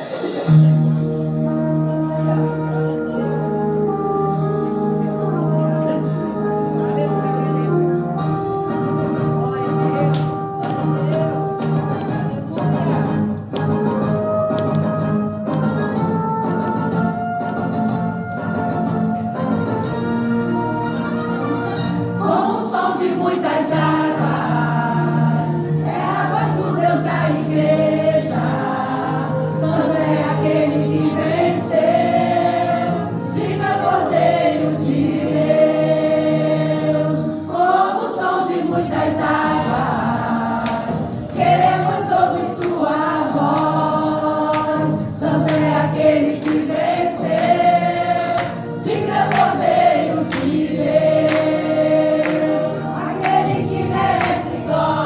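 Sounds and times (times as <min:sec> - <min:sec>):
instrumental accompaniment: 0:00.0 - 0:55.0
group singing gospel song: 0:21.4 - 0:55.0.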